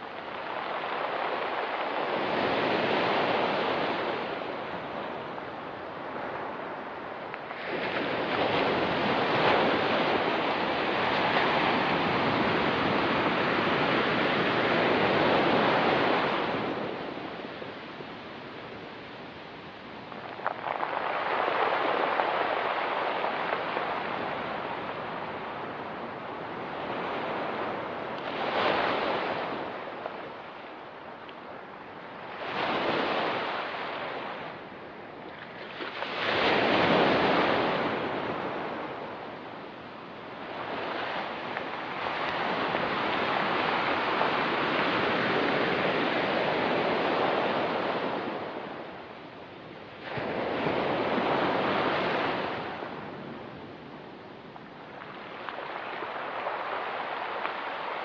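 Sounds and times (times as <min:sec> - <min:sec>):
waves breaking on pebble beach: 0:19.8 - 0:31.2.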